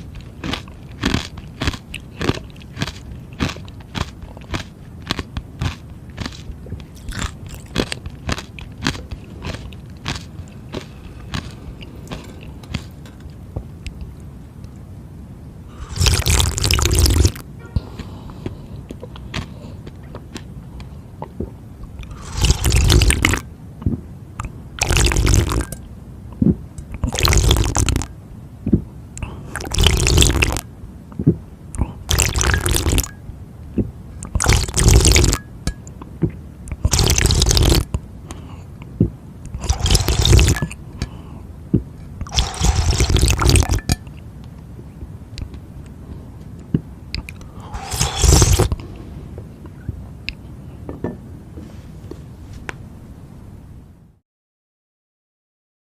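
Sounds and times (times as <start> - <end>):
loud gulps of drinking: 42.2 - 43.7, 47.4 - 48.8.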